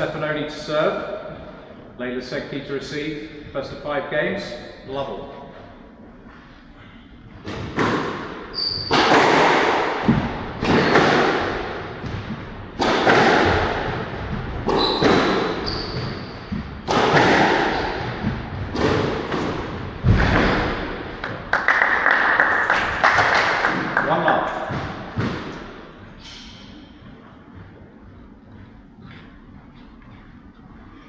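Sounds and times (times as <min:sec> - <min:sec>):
squash ball striking rackets and walls: 0:07.2 - 0:26.9
shoe squeaks: 0:08.5 - 0:09.2, 0:14.7 - 0:16.6.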